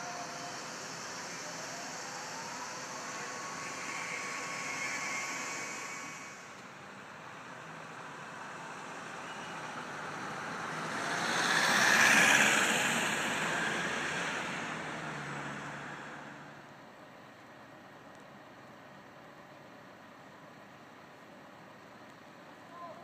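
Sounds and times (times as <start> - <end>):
road vehicle passing by: 0.0 - 16.8.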